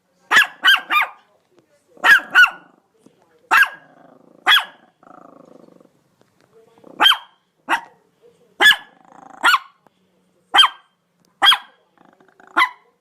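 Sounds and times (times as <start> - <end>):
dog barking: 0.3 - 1.3, 2.0 - 2.8, 3.5 - 4.9, 7.0 - 8.0, 8.6 - 9.8, 10.5 - 11.8, 12.5 - 13.0.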